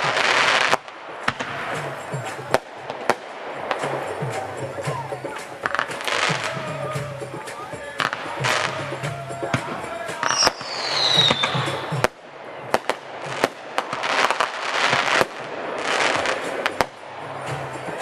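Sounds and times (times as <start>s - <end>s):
fireworks bangs: 0.0s - 18.0s
fireworks crackling: 0.0s - 18.0s
falling firework whistle: 10.2s - 12.8s.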